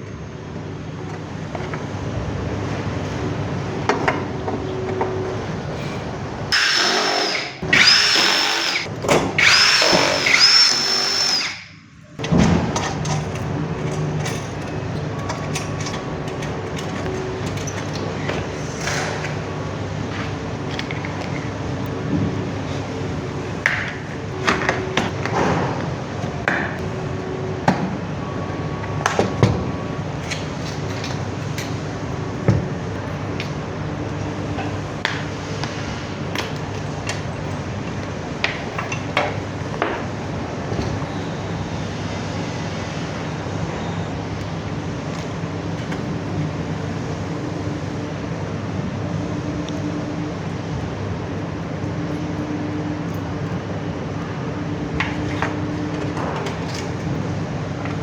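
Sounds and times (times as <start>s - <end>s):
steady background hum: 0.0s - 58.0s.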